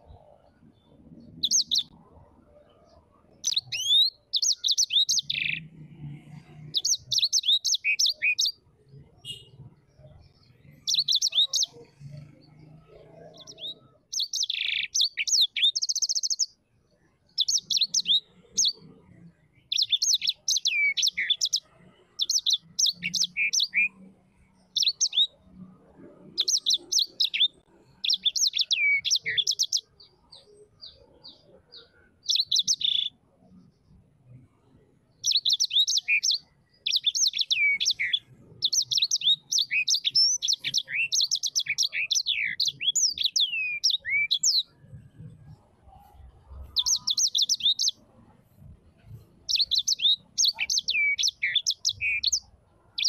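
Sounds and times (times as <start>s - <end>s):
bird singing high chirps: 0.0s - 34.0s, 35.1s - 48.2s, 49.0s - 53.0s.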